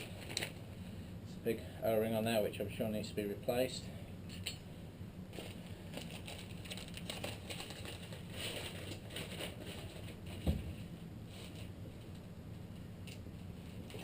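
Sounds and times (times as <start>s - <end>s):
metal parts clicking and rustling: 5.4s - 10.3s.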